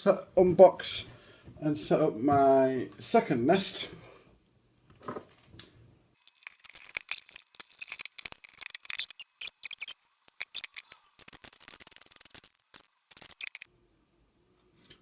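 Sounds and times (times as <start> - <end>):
cardboard and plastic crackling: 6.2 - 13.7.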